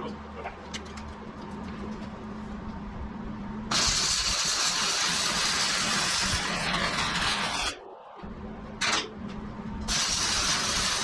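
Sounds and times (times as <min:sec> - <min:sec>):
welding arc hissing: 0:03.7 - 0:07.8, 0:09.9 - 0:11.0.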